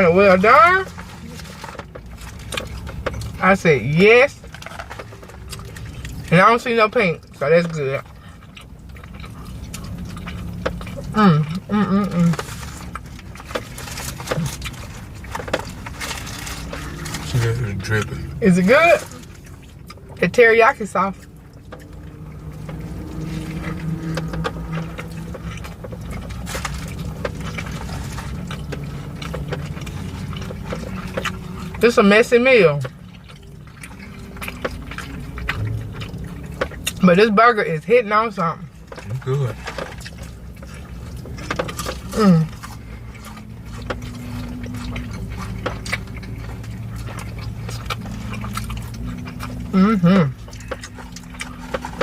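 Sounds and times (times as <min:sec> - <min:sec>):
steady low hum: 0:00.0 - 0:52.0
wet chewing: 0:00.0 - 0:52.0.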